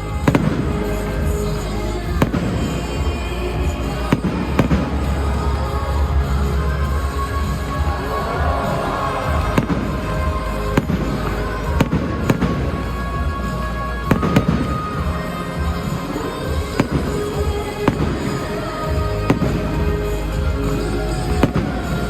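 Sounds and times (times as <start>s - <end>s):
fireworks bangs: 0.0s - 22.0s
music playing: 0.0s - 22.0s.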